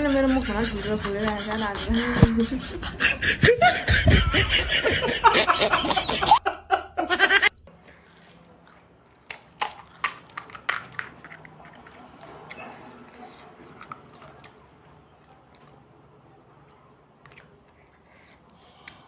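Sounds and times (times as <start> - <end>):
person laughing with mouth full: 0.0 - 7.5.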